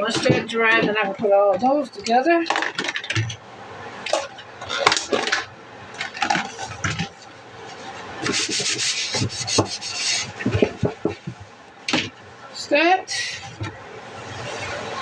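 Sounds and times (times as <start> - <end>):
rubbing or scraping: 6.2 - 11.5.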